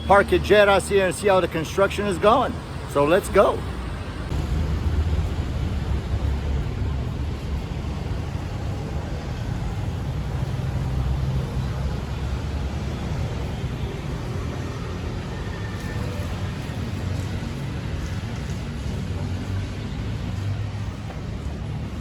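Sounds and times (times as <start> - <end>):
traffic rumble: 0.0 - 22.0.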